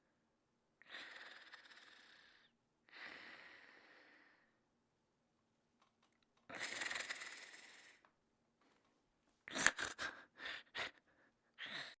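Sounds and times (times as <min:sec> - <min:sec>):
cartoon character snoring: 0:00.9 - 0:02.5, 0:06.5 - 0:08.0.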